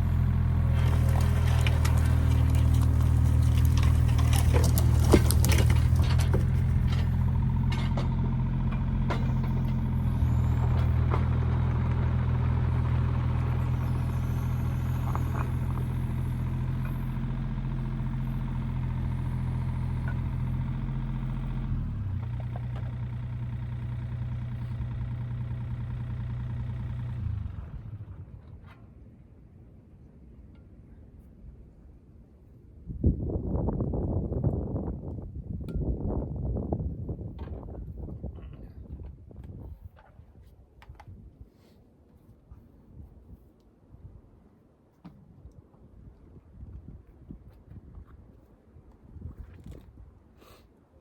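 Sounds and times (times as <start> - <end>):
diesel engine running: 0.0 - 28.9
sharp knocks and clanks: 0.8 - 10.0.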